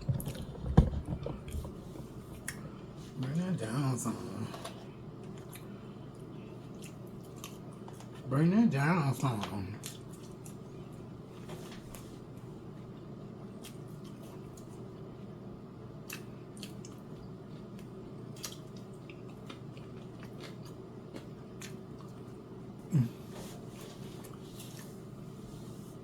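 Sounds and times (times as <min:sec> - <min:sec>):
chewing: 0:00.0 - 0:01.7, 0:04.6 - 0:08.2, 0:09.4 - 0:12.1, 0:12.9 - 0:14.9, 0:16.0 - 0:22.4.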